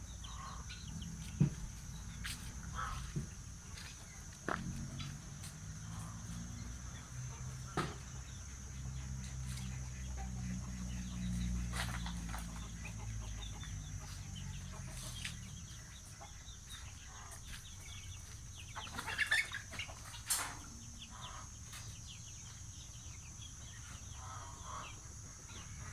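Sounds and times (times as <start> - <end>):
bird clucking calls: 0.0 - 5.2, 7.7 - 22.1.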